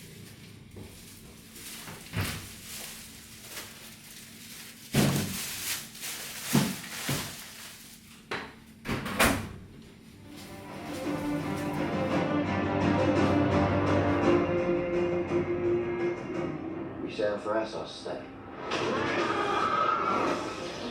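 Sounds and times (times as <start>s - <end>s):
household knocks and thuds: 4.9s - 5.4s, 6.4s - 7.4s.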